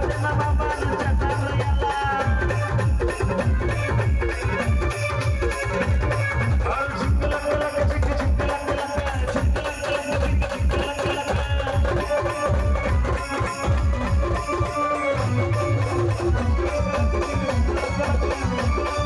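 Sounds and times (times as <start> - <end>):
fast drum beat: 0.0 - 19.0
folk melody line: 12.1 - 19.0.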